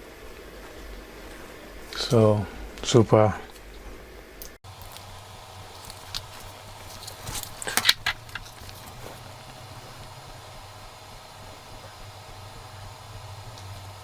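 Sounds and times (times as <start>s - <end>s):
steady low hum: 0.0s - 14.0s
small items clicking and tapping: 4.7s - 9.6s.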